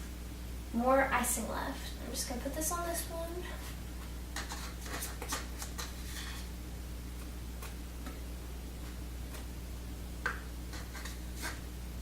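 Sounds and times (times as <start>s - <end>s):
steady low hum: 0.0s - 12.0s
utensil spreading icing: 10.7s - 11.7s.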